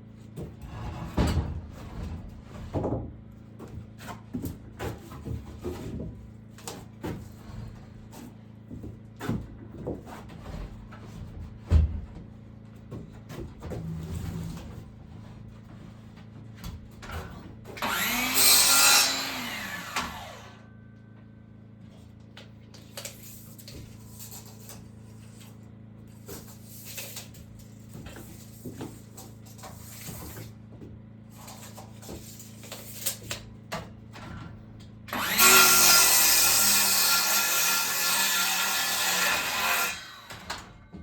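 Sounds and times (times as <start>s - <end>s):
power tool cutting wood: 17.8s - 20.6s, 35.1s - 40.7s.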